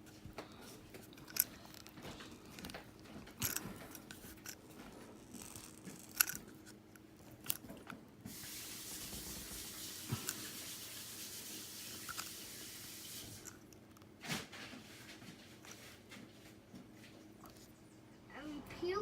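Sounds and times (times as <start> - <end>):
steady hiss: 8.3 - 13.6.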